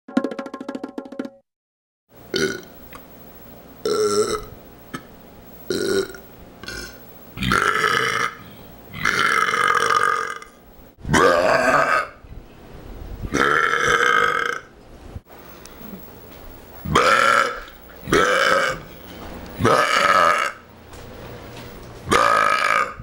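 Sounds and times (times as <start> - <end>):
man burping loudly: 2.3 - 2.7, 3.8 - 5.1, 5.7 - 12.2, 13.3 - 14.7, 16.9 - 18.9, 19.6 - 20.6, 22.1 - 23.0.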